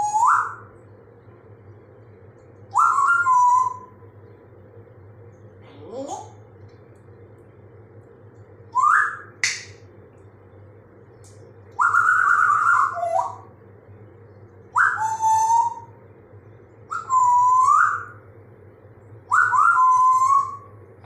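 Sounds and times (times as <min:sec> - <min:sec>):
parrot whistling: 0:00.0 - 0:00.7, 0:02.7 - 0:04.0, 0:08.7 - 0:09.8, 0:11.8 - 0:13.5, 0:14.8 - 0:16.0, 0:16.9 - 0:18.2, 0:19.3 - 0:20.7
sharp click: 0:09.4 - 0:09.8.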